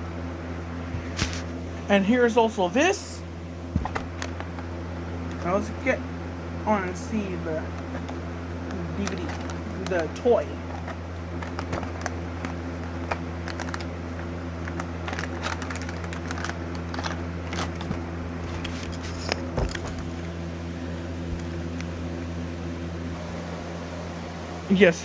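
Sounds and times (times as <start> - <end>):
steady low hum: 0.0 - 25.0
plastic packaging crackling: 3.8 - 5.6, 7.6 - 20.4.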